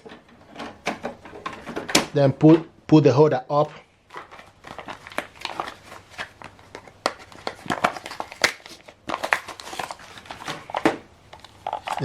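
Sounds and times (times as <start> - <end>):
plastic packaging crinkling: 4.0 - 12.0.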